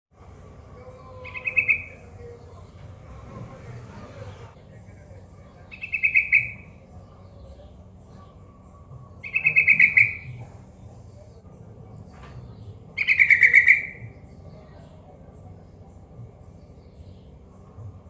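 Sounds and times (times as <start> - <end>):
bulbul chattering calls: 1.2 - 2.2, 5.4 - 11.4, 12.5 - 15.2.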